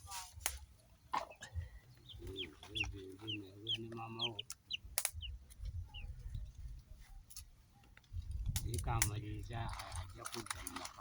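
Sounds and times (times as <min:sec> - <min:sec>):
chickens clucking: 0:00.9 - 0:06.8
high falling peeps: 0:02.0 - 0:06.1.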